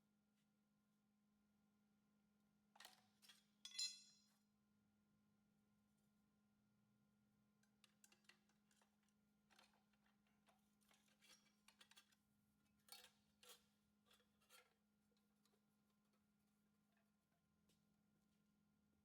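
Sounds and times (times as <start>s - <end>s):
faint scraping and clicking: 7.6s - 16.3s.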